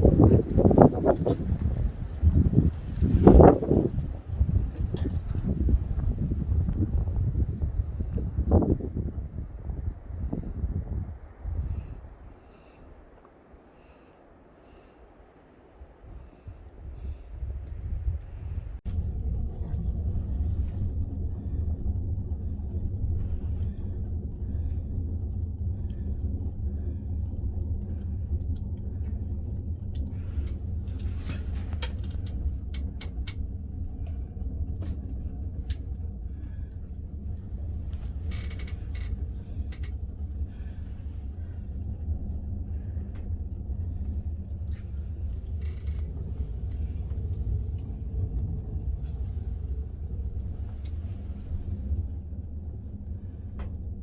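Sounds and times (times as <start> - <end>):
fire rumbling in stove: 0.0 - 14.0, 15.6 - 54.0.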